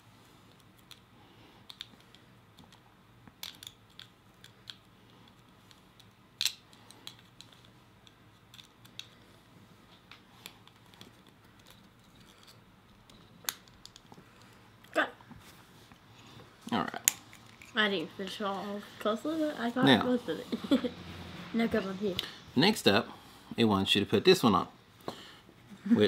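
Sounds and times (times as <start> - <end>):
plastic parts clicking: 3.4 - 9.2.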